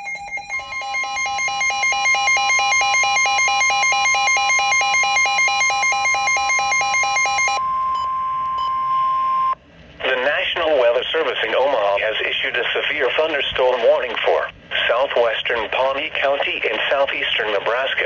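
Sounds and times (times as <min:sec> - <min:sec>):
rapid electronic beeping: 0:00.0 - 0:07.6
steady high tone: 0:00.0 - 0:09.6.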